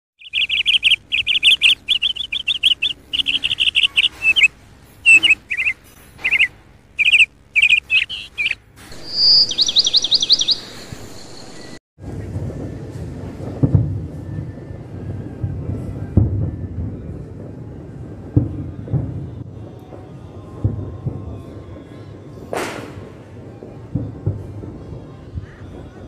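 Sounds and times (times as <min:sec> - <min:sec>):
bird song with chirping trills: 0:00.2 - 0:11.8.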